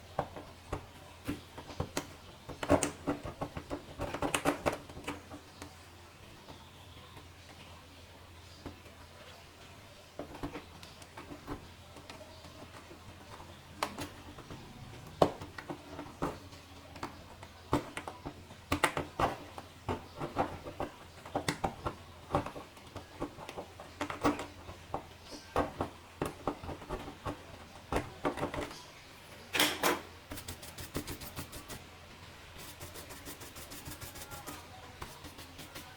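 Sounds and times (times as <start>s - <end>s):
clicks and knocks of plastic parts: 0.0s - 5.8s, 10.2s - 28.8s.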